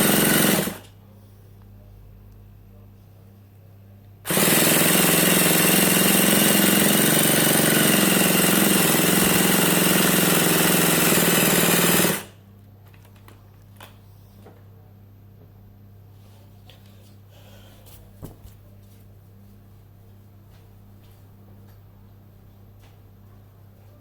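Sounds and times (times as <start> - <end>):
electric starter buzzing: 0.0 - 0.9, 4.3 - 12.4.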